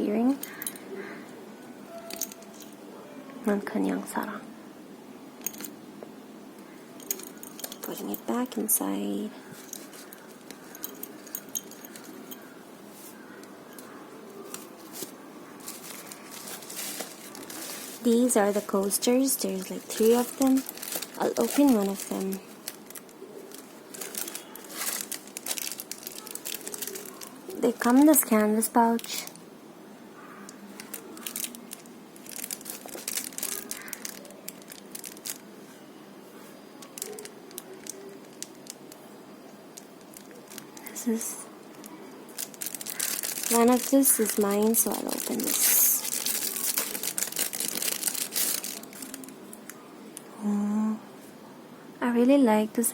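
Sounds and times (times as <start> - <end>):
packaging rustling: 9.4 - 29.4, 30.5 - 35.5, 36.8 - 39.0, 39.7 - 49.8.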